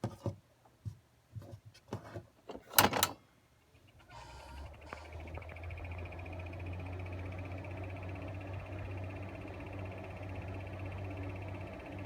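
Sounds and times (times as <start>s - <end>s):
ventilation fan motor hum: 4.0s - 12.0s
steady high whine: 4.1s - 12.0s.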